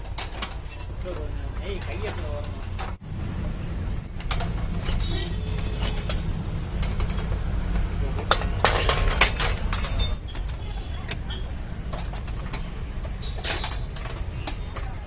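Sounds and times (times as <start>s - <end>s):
metal tools clinking: 0.0s - 3.0s, 8.2s - 10.7s, 11.3s - 14.8s.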